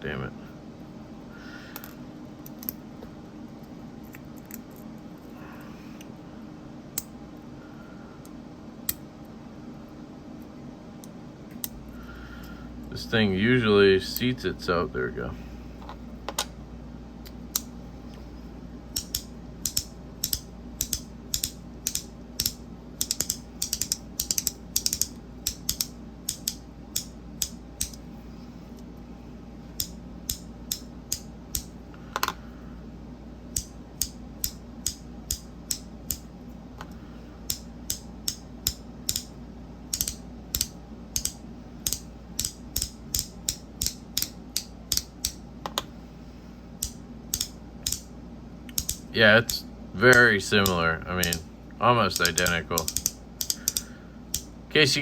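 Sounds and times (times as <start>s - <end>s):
magnetic fidget clicking: 18.9s - 28.0s, 29.8s - 32.4s, 33.5s - 36.3s, 37.5s - 45.4s, 46.8s - 48.1s, 48.7s - 51.4s, 52.1s - 54.5s.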